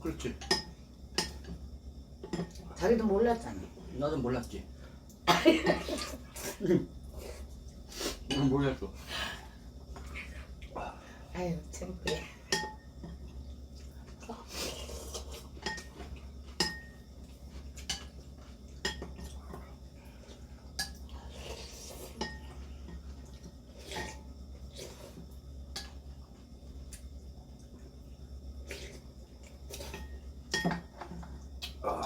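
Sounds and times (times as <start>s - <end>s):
utensils clinking against dishes: 0.2s - 1.6s, 8.2s - 8.8s, 12.1s - 13.2s, 15.6s - 17.0s, 29.8s - 31.3s.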